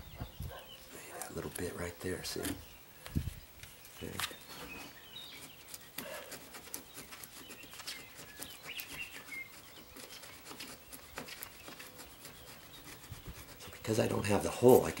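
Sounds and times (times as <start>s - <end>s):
faint birds chirping: 0.0s - 15.0s
chisel scraping wood: 4.2s - 15.0s.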